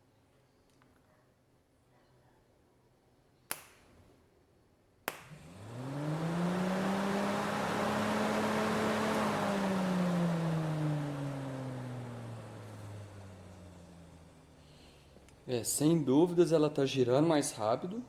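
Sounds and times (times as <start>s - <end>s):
electric fan motor whirring: 5.3s - 16.2s.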